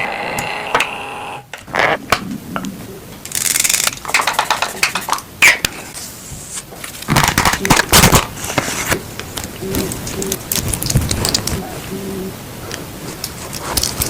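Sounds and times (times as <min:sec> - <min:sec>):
packaging crackling and rustling: 0:06.8 - 0:11.6.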